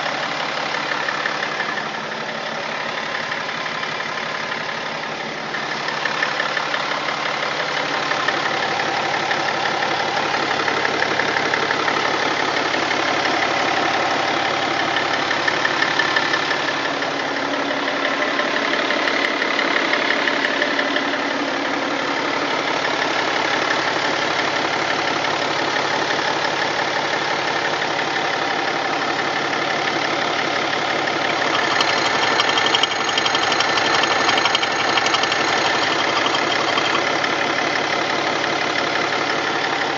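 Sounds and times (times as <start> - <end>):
diesel engine idling: 0.0 - 39.9
extraneous engine noise: 28.4 - 39.9.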